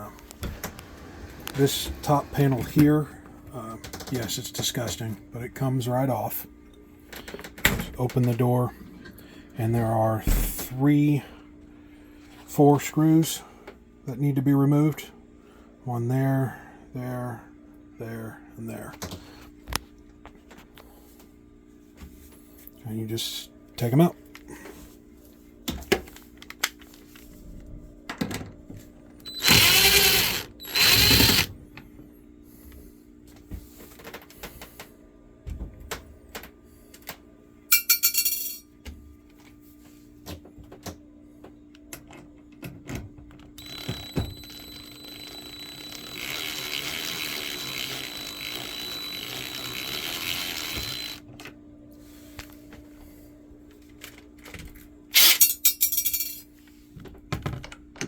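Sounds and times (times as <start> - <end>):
faint steady hum: 0.0 - 40.1, 43.4 - 57.2
cordless driver motor whirring: 29.3 - 31.5, 43.6 - 51.2.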